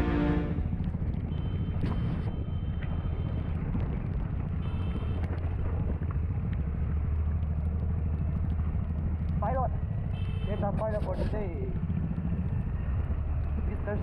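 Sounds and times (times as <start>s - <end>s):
wind on microphone: 0.0s - 9.4s
vehicle rumble: 0.0s - 14.0s.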